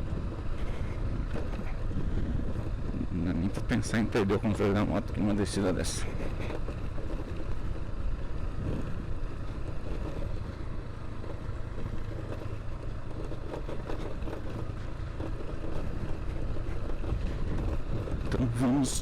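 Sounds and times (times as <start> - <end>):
wind on microphone: 0.0 - 3.8
motorcycle engine running: 0.0 - 19.0.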